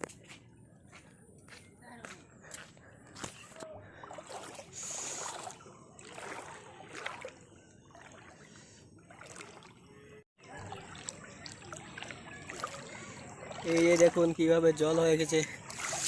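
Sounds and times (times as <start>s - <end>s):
floodwater sloshing and splashing: 3.2s - 16.0s.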